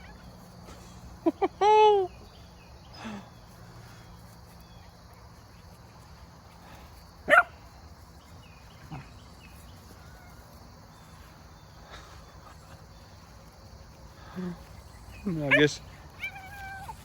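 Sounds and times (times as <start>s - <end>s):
pet crying: 15.5s - 17.0s.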